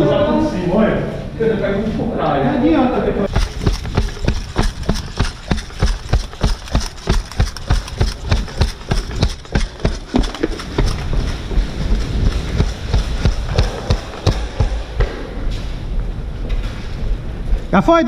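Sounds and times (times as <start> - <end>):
running footsteps thudding: 3.3 - 17.6.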